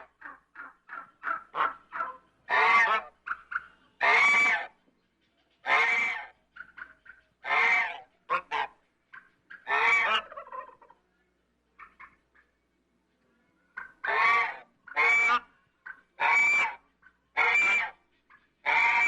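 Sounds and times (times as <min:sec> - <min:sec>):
goose honking: 0:00.0 - 0:04.7, 0:05.6 - 0:08.8, 0:09.5 - 0:10.9, 0:13.8 - 0:16.8, 0:17.4 - 0:18.0, 0:18.6 - 0:19.0.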